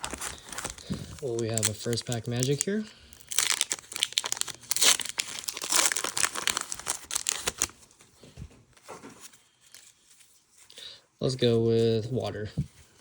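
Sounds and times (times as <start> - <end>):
foil wrapper tearing and crinkling: 0.0 - 8.0.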